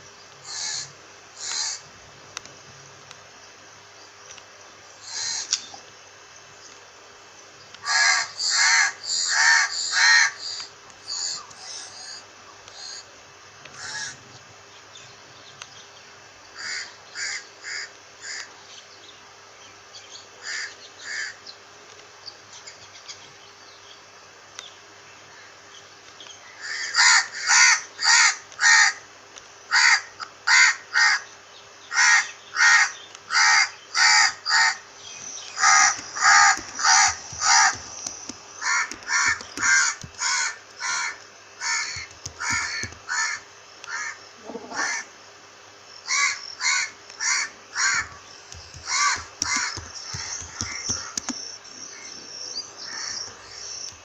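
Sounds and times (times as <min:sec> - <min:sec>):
crows cawing: 0:00.4 - 0:01.8, 0:05.0 - 0:05.5, 0:07.8 - 0:11.4, 0:13.8 - 0:14.2, 0:16.6 - 0:18.5, 0:20.4 - 0:21.4, 0:26.4 - 0:29.0, 0:29.7 - 0:31.3, 0:31.9 - 0:34.8, 0:35.5 - 0:45.1, 0:46.1 - 0:51.4, 0:52.8 - 0:53.5.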